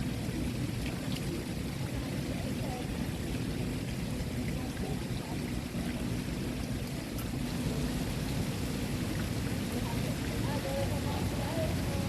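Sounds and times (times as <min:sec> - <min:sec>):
water rushing: 0:00.0 - 0:12.0.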